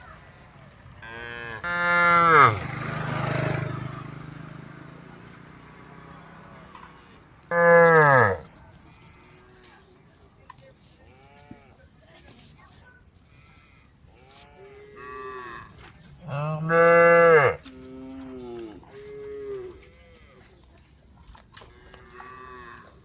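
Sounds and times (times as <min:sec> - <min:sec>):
cows mooing: 0:01.0 - 0:04.1, 0:07.4 - 0:09.6, 0:13.4 - 0:20.3, 0:21.6 - 0:23.0.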